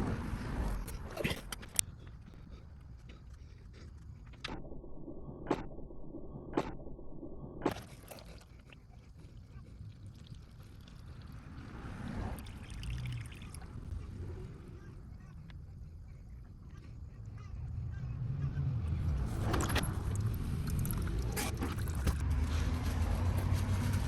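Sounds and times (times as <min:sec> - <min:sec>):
sharp clicks: 0:04.3 - 0:08.0.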